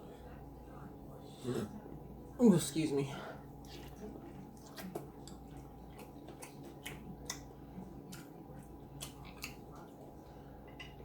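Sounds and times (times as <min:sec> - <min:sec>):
wet chewing and mouth smacks: 0:03.6 - 0:10.0.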